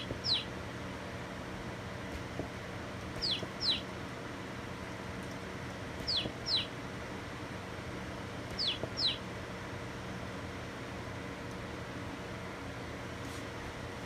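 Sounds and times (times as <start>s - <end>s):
alarm clock chick cheeps: 0.2s - 0.4s, 3.2s - 3.8s, 6.1s - 6.7s, 8.6s - 9.2s.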